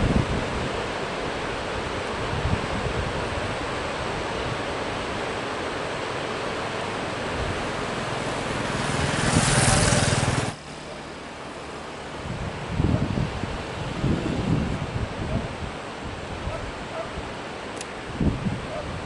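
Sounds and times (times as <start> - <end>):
strong wind on microphone: 0.0 - 5.1, 8.7 - 10.6, 12.2 - 17.4, 18.0 - 19.0.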